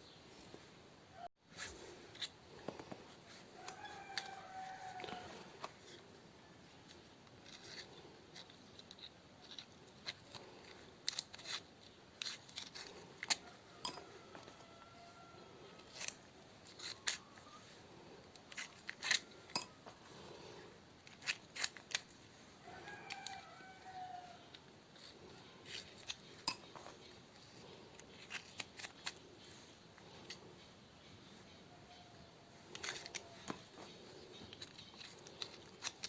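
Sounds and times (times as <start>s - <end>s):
hand tools clicking and snipping: 12.5s - 14.0s, 18.5s - 20.0s, 26.5s - 26.9s, 32.7s - 33.7s.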